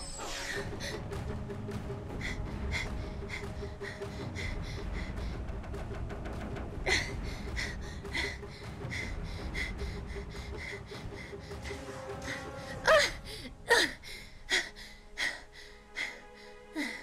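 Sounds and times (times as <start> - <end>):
person gasping breaths: 2.1 - 5.5, 6.9 - 17.0.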